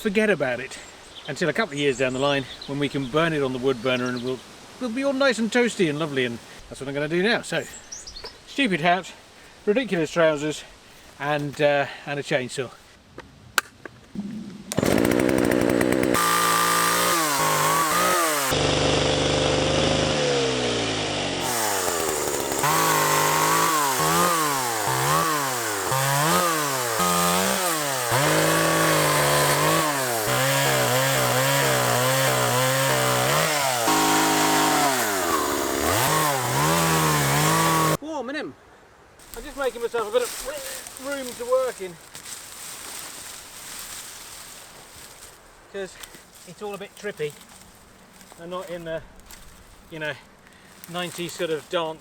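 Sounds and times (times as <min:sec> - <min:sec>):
chainsaw cutting wood: 0:14.7 - 0:38.0.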